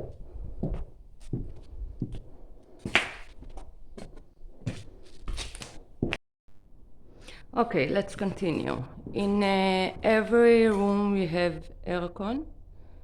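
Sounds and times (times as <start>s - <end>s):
footsteps on hard floor: 0.0s - 6.2s.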